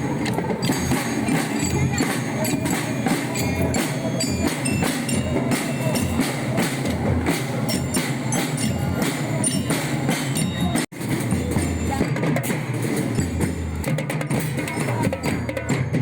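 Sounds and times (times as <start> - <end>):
drums with steady beat: 0.0 - 16.0.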